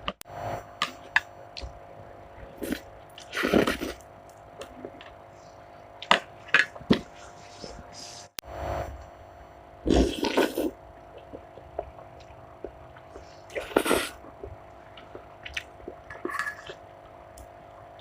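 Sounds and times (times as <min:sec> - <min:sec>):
person slurping and chewing noodles: 0:02.4 - 0:08.2, 0:09.8 - 0:17.2.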